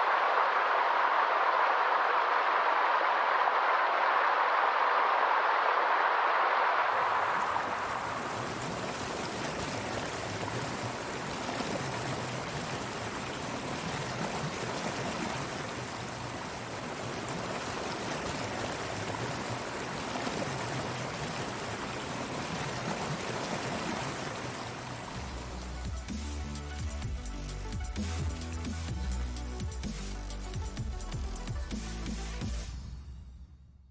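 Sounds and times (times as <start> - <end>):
waterfall roar: 6.8 - 25.5.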